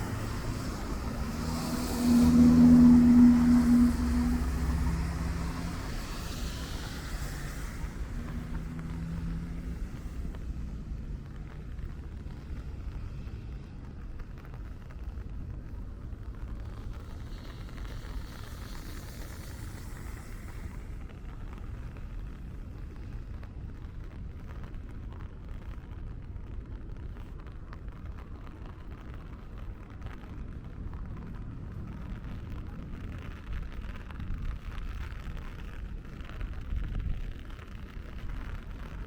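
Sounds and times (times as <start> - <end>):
low rumble of traffic: 0.0 - 39.0
tyre hiss on wet road: 0.0 - 39.0.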